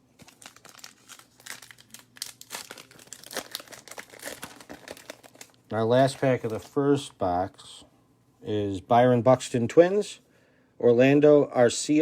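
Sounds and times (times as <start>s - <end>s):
wrapper crinkling and tearing: 0.1s - 6.8s.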